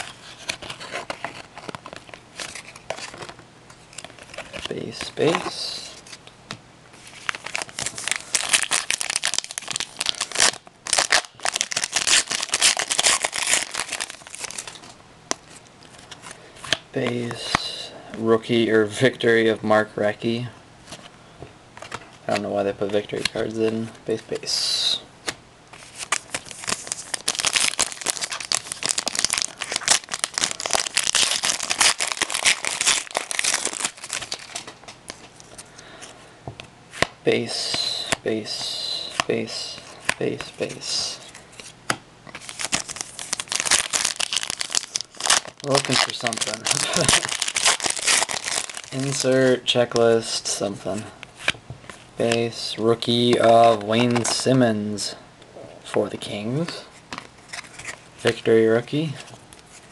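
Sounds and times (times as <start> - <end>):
wrapper crinkling and rustling: 7.0 - 16.3, 25.8 - 35.7, 42.3 - 49.5.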